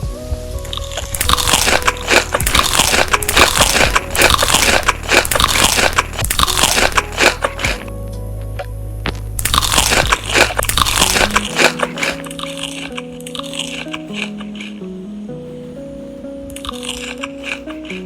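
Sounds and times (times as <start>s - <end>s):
crunchy food chewing: 0.7s - 7.9s, 9.1s - 14.8s, 16.6s - 18.0s.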